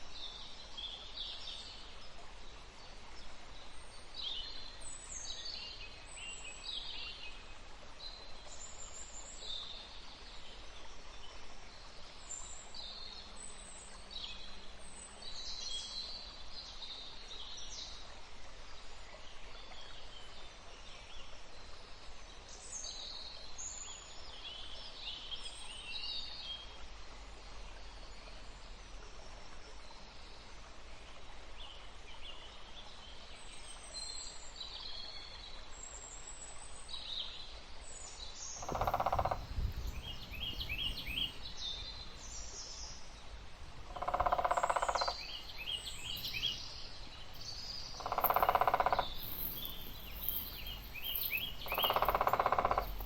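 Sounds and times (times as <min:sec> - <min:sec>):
steady background hiss: 0:35.7 - 0:53.0
small birds chirping: 0:38.6 - 0:53.0.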